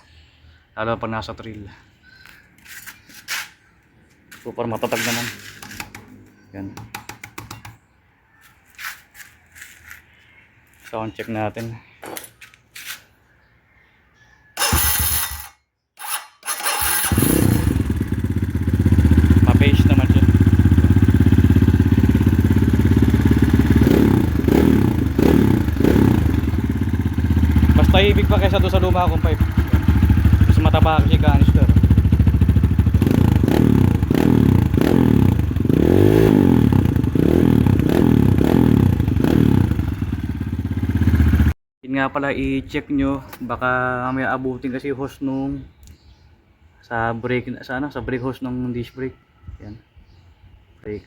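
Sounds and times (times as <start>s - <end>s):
electric starter cranking: 14.6s - 18.2s
motorcycle engine idling: 16.8s - 41.5s.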